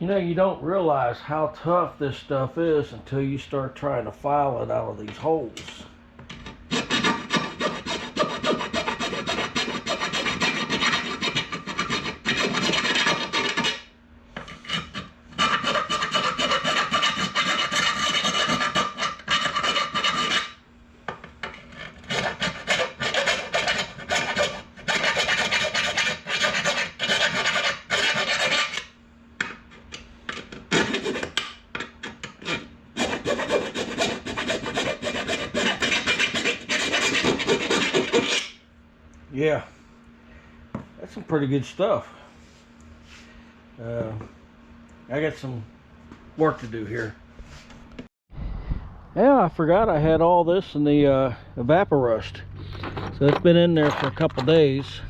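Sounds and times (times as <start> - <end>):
hand file scraping: 6.3 - 20.6, 21.4 - 29.0, 29.9 - 38.6.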